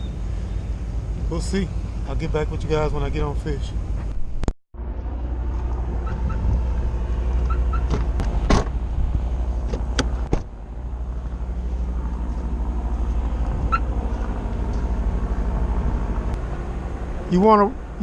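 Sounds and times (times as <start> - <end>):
vehicle engine humming: 0.0 - 18.0.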